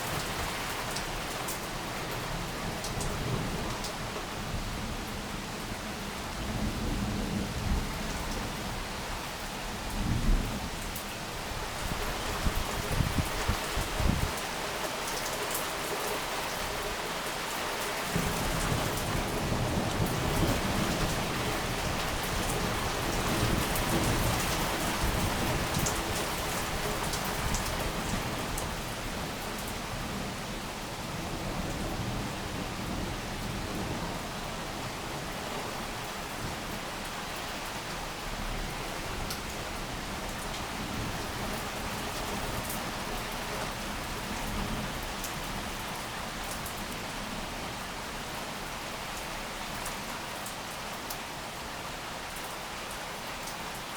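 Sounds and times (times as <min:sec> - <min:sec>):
heavy rain pouring: 0:00.0 - 0:53.9
low rumble of thunder: 0:02.3 - 0:09.0.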